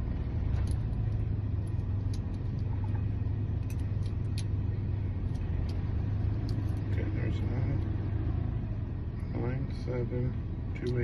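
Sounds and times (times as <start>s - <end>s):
low engine rumble: 0.0s - 11.0s
light ticks of metal parts: 0.4s - 7.0s, 10.8s - 11.0s.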